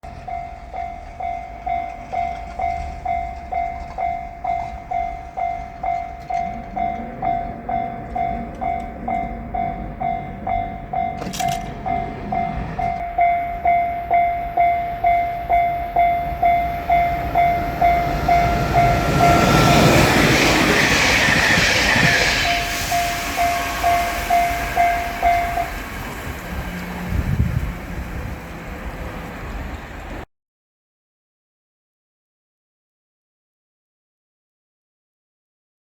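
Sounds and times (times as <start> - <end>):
level-crossing alarm bell ringing: 0.0 - 26.4
electric train passing: 0.0 - 30.3.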